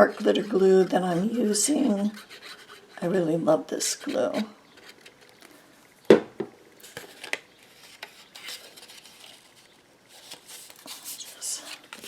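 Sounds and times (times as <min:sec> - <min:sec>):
light rubbing of paper: 0:00.0 - 0:03.1, 0:07.7 - 0:12.0.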